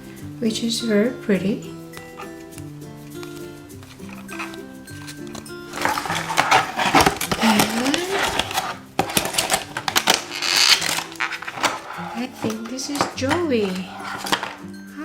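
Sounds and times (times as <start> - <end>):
soft background music: 0.0 - 15.0
plastic packaging crackling: 3.8 - 14.6.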